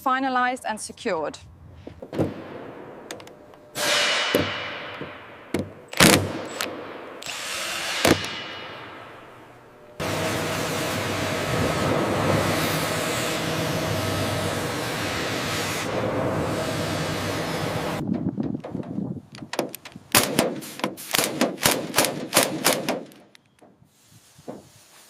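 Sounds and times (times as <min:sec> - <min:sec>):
sharp knocks: 0:01.9 - 0:03.2, 0:03.8 - 0:07.1, 0:08.0 - 0:09.1, 0:18.0 - 0:23.3
machine running with low hum: 0:02.3 - 0:18.0.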